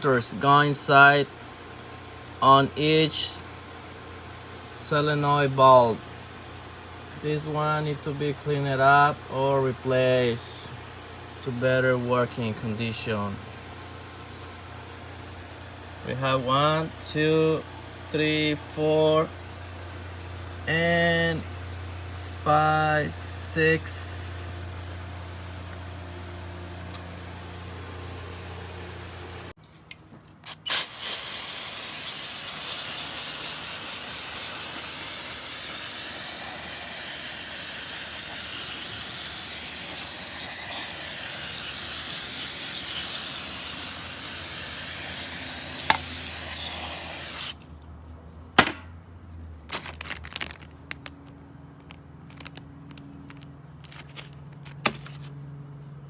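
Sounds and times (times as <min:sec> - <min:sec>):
cleaning spray hissing: 0:30.5 - 0:47.6.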